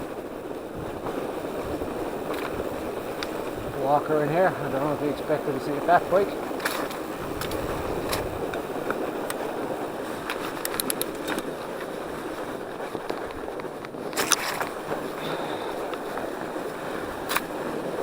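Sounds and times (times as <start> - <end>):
bike tyres rolling on snow: 0.0 - 18.0
bike clicks and knocks: 2.3 - 3.4, 10.2 - 11.9, 17.2 - 17.6.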